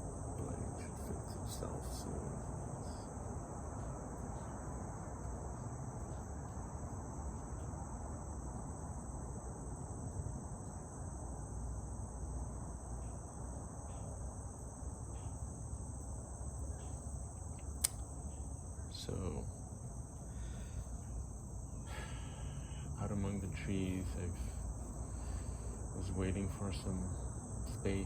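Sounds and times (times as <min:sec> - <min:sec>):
distant highway traffic: 0:00.0 - 0:28.0
insects chirping: 0:00.0 - 0:28.0
sharp tick: 0:17.6 - 0:18.1.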